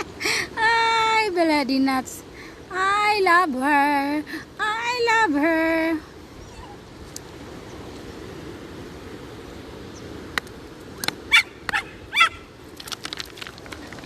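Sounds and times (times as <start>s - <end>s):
dog yelping and barking: 11.3s - 12.4s.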